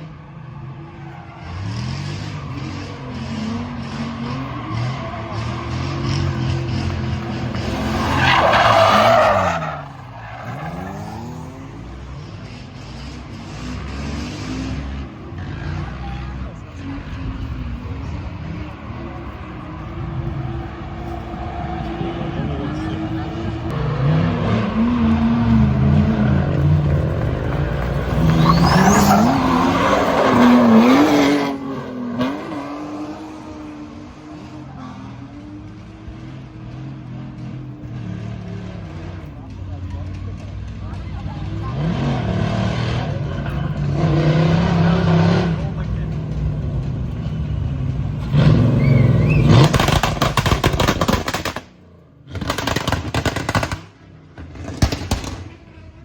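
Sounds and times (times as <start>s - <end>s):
race car engine at speed: 0.0s - 56.0s
race car engine revving past: 20.2s - 39.2s
crackling engine rattle: 49.3s - 51.7s, 52.3s - 53.9s.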